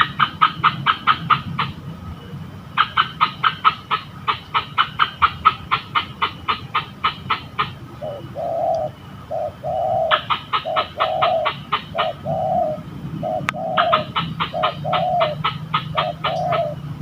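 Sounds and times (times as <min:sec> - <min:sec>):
doves cooing: 0:00.0 - 0:17.0.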